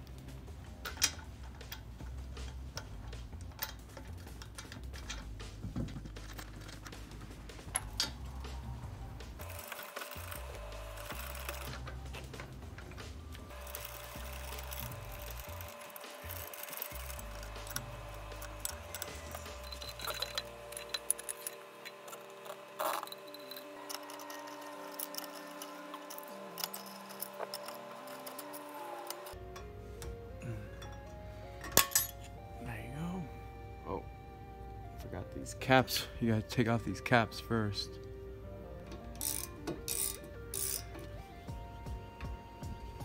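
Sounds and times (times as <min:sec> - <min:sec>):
metal tools clinking: 0:00.8 - 0:08.2, 0:11.0 - 0:32.3
low steady hum: 0:10.2 - 0:43.0.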